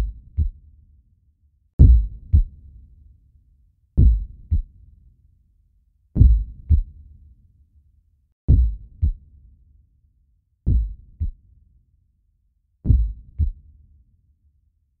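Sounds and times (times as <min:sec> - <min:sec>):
heartbeat double thumps: 0:00.0 - 0:00.6, 0:01.8 - 0:02.5, 0:04.0 - 0:04.7, 0:06.2 - 0:06.9, 0:08.5 - 0:09.2, 0:10.7 - 0:11.4, 0:12.9 - 0:13.6.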